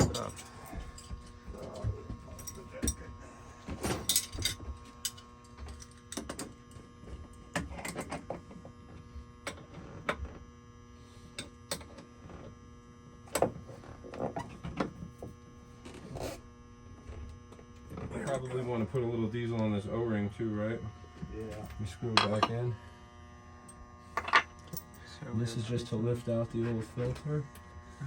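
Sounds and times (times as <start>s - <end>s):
electrical hum: 0.0s - 28.0s.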